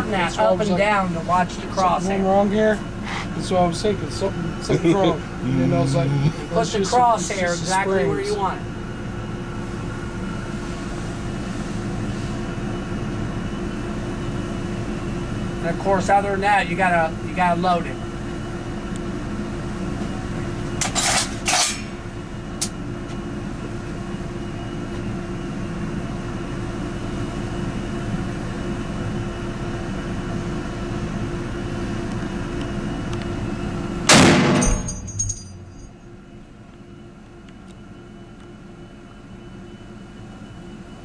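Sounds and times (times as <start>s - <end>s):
steady hum: 0.0s - 41.0s
rifle shot: 34.1s - 35.1s
high metallic ringing: 34.5s - 36.2s.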